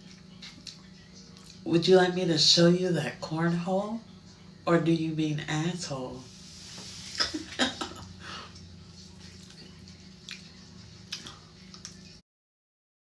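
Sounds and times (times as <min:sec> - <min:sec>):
person chewing food: 0:00.0 - 0:01.6, 0:08.3 - 0:12.2
low steady hum: 0:00.0 - 0:12.2.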